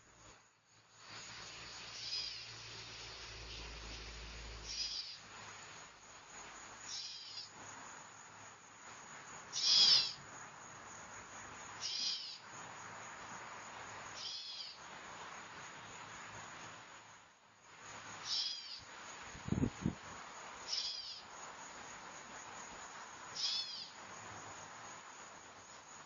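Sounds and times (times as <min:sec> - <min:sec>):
hawk calling: 0:09.6 - 0:10.2, 0:11.8 - 0:12.4, 0:18.3 - 0:18.8, 0:23.4 - 0:23.9.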